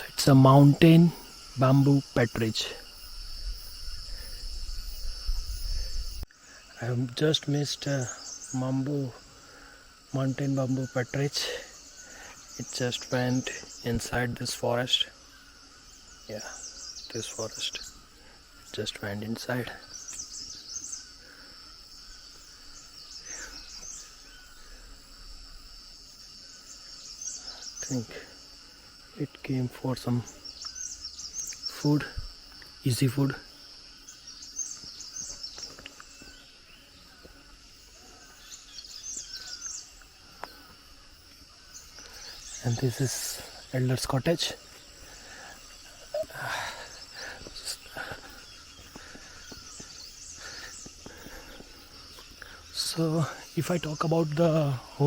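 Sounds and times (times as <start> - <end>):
bird chirping: 0.0 - 55.0
high-pitched insect drone: 0.0 - 55.0
faint high bird chirps: 34.0 - 55.0.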